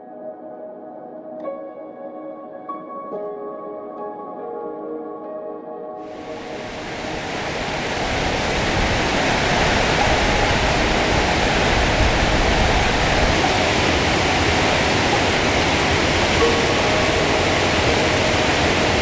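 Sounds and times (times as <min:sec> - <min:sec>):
waterfall rushing: 0:06.1 - 0:19.0.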